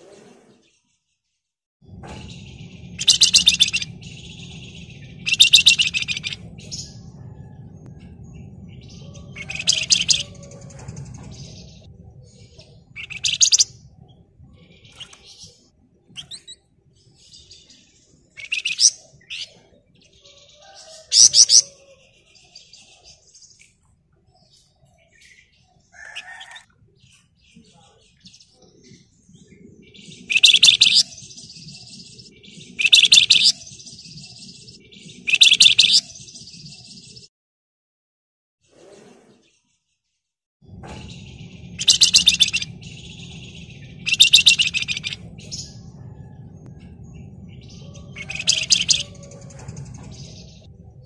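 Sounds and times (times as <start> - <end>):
songbird rattling trills: 2.2 - 7.5, 8.1 - 11.9, 12.8 - 13.8, 29.9 - 34.1, 41.0 - 46.2, 47.5 - 50.6
soft bird chattering: 2.4 - 7.4, 9.0 - 11.6, 12.3 - 16.7, 18.2 - 22.2, 25.2 - 36.2, 41.4 - 45.8, 47.8 - 50.0.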